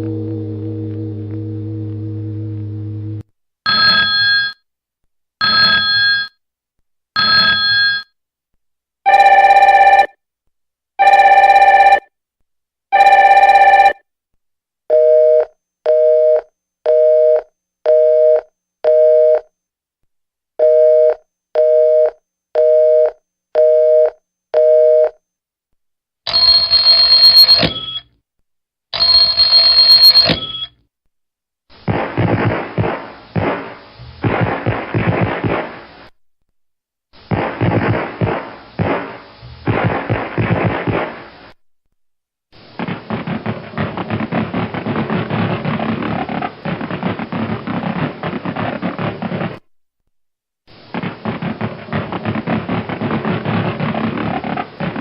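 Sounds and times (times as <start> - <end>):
telephone ringing: 3.7 - 4.6, 5.4 - 6.4, 7.2 - 8.1, 9.1 - 10.2, 11.0 - 12.1, 12.9 - 14.0, 26.3 - 28.1, 29.0 - 30.8
quick beeps: 29.7 - 30.7.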